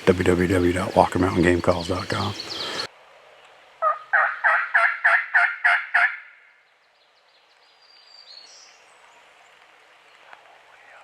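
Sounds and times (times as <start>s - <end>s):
faint high bird chirps: 0.6s - 3.5s
wild turkey yelps: 3.8s - 6.5s.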